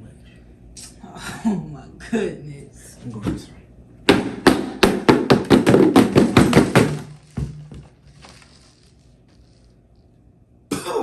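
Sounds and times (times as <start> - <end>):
sharp knocks: 4.1 - 7.9.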